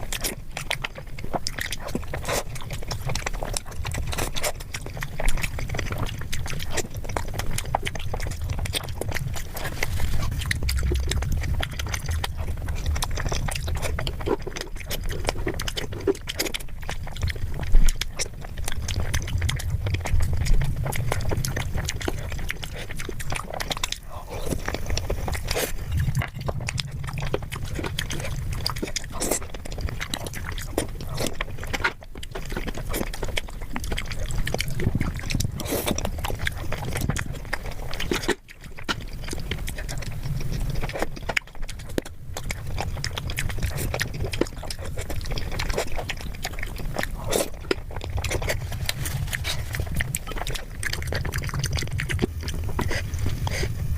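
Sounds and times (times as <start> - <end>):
chewing mouth clicks and smacks: 0.0 - 53.9
low rumble: 5.7 - 15.8, 18.4 - 30.4.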